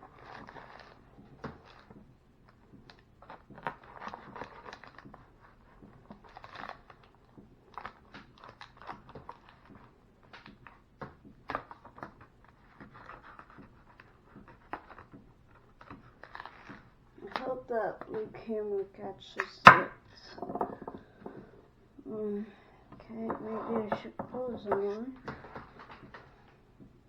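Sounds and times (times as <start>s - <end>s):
food packaging rustling: 0.0s - 18.2s, 24.8s - 26.7s.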